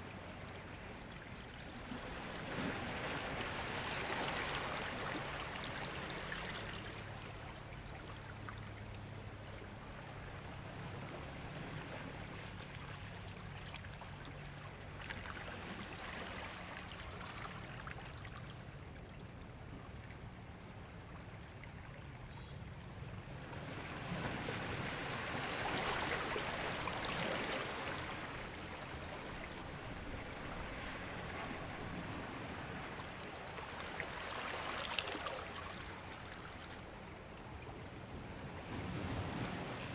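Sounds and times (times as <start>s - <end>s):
ocean waves washing ashore: 23.4s - 39.9s.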